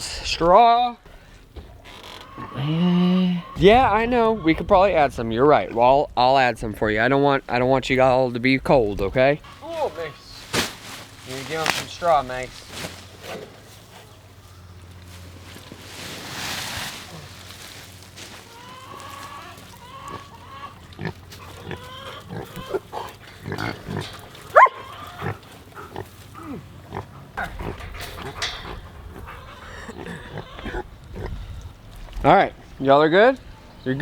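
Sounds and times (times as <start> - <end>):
pig squealing: 2.0 - 3.6, 18.2 - 31.0
pigs grunting: 2.2 - 3.7, 16.9 - 31.7
straw rustling: 8.2 - 28.3.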